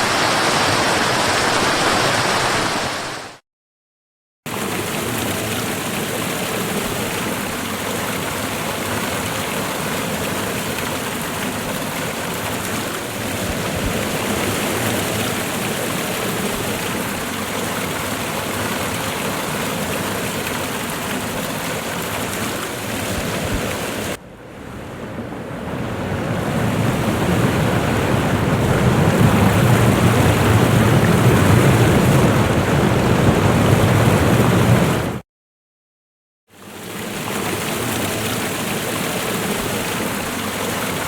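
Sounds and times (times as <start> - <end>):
waterfall rushing: 0.0 - 3.4, 4.5 - 24.2, 36.8 - 41.0.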